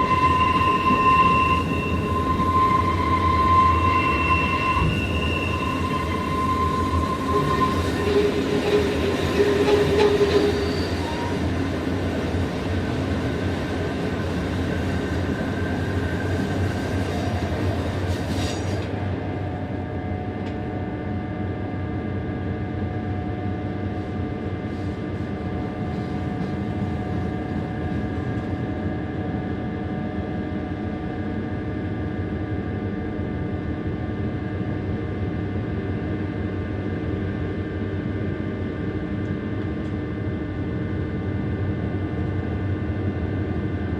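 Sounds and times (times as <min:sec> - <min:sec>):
wheel squeal: 0:00.0 - 0:11.5
steady whine of held tones: 0:00.0 - 0:16.6
train wheels rumbling on rail: 0:00.0 - 0:31.8.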